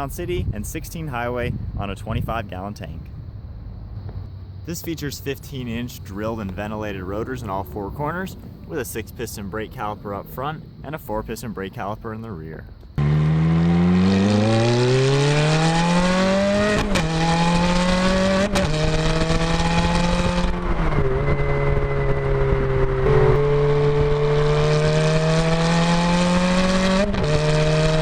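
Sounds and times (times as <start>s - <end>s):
sports car engine accelerating: 12.9s - 28.0s.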